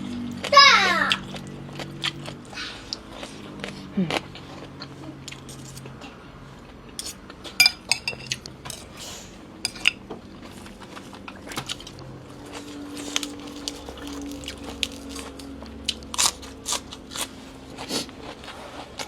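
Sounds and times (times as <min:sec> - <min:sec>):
utensils clinking against bowl: 0:07.0 - 0:08.9, 0:09.7 - 0:10.0.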